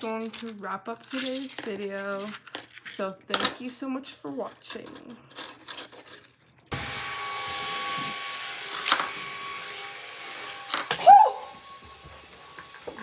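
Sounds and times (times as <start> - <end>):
toy propeller motors whirring: 0.0 - 3.6, 4.9 - 13.0
person exclaiming: 10.9 - 11.6.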